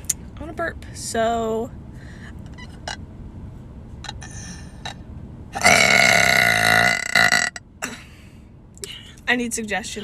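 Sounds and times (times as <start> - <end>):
woman burping: 5.6 - 8.0.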